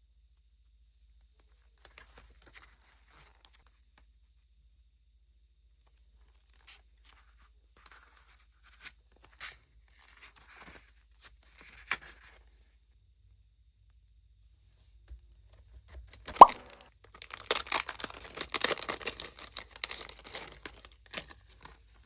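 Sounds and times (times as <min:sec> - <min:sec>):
packaging rustling and tearing: 0:16.1 - 0:22.0.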